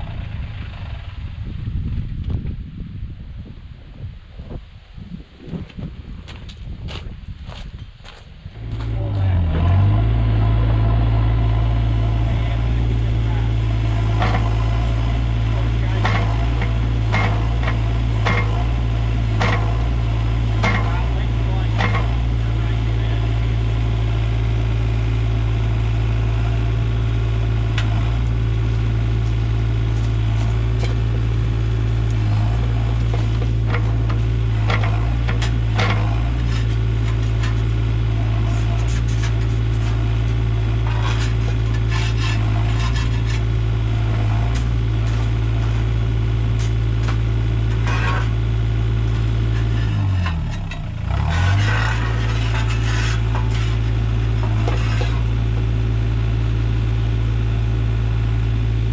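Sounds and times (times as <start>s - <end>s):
diesel engine running: 0.0s - 2.3s, 8.1s - 58.9s
knocks and clatters: 14.0s - 15.2s, 15.8s - 22.3s, 32.2s - 37.7s, 38.3s - 43.5s, 46.6s - 48.4s, 49.1s - 55.7s.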